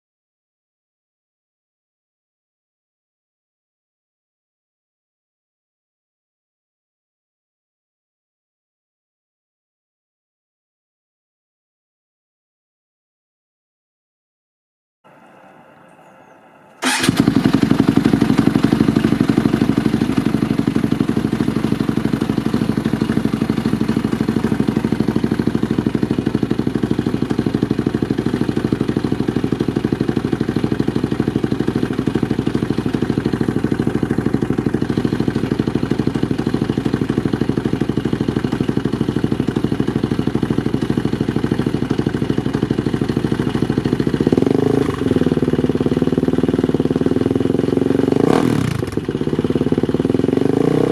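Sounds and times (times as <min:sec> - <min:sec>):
engine starting: 0:16.6 - 0:17.8
engine idling: 0:16.8 - 0:50.9
engine rev: 0:16.8 - 0:50.9.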